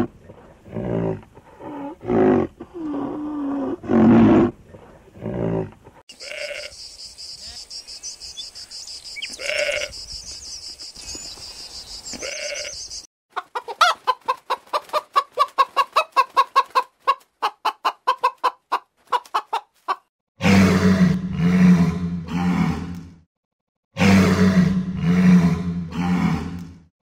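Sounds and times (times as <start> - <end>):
chicken clucking: 13.3 - 20.0.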